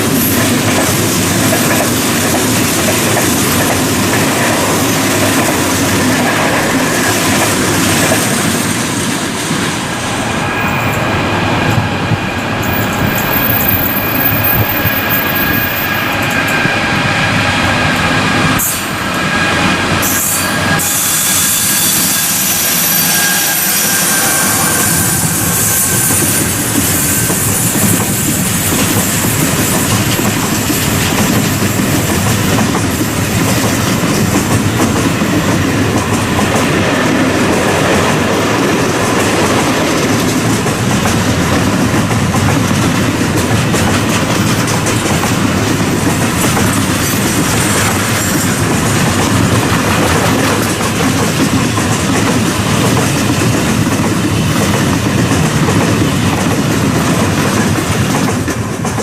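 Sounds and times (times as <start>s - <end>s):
freight train wagons rumbling: 0.0s - 59.0s
wheels squealing on rails: 0.0s - 59.0s.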